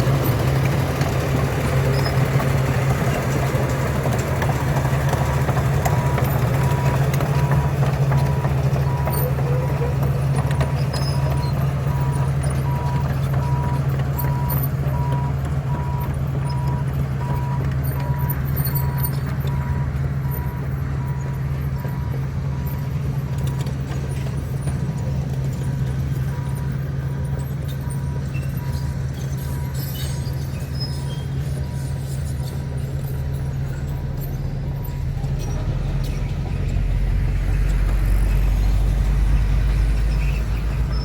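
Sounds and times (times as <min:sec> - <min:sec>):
diesel machinery engine rumble: 0:00.0 - 0:41.0
reversing alarm beeping: 0:04.8 - 0:32.0.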